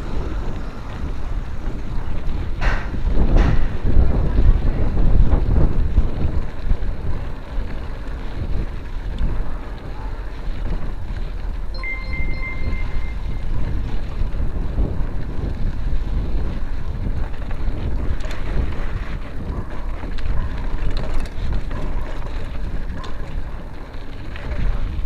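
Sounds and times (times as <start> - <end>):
wind buffeting microphone: 0.0 - 25.0
thin high steady tone: 11.8 - 14.0.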